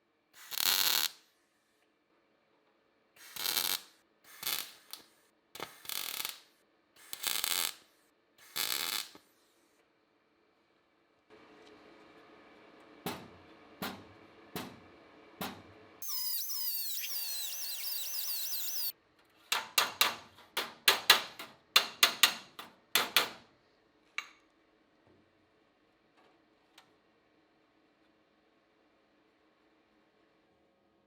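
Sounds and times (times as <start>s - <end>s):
power tool whining: 16.0s - 18.9s.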